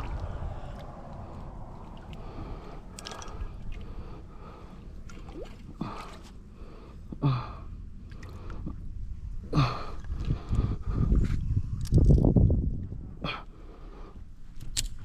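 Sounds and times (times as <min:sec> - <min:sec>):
low rumbling handling noise: 0:00.0 - 0:05.0.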